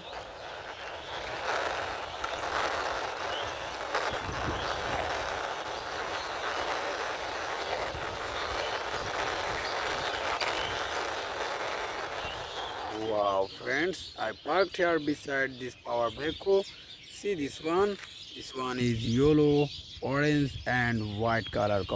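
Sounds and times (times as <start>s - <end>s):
toy wheels rolling: 0.0s - 14.2s.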